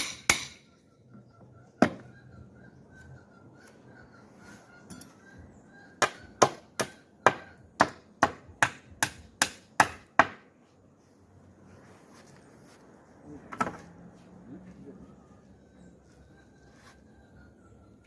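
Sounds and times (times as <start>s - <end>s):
hammer striking wood: 0.0s - 0.6s, 6.0s - 10.4s.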